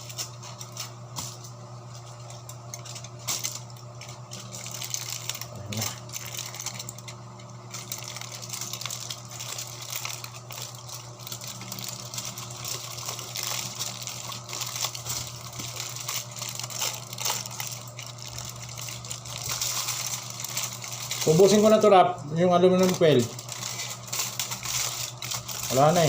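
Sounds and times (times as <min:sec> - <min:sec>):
aluminum foil crinkling: 0:00.0 - 0:26.0
steady low hum: 0:00.0 - 0:26.0.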